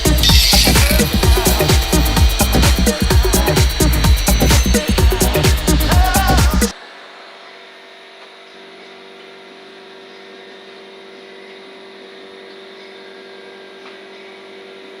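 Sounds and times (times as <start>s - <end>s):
milling machine humming: 0.0s - 6.7s.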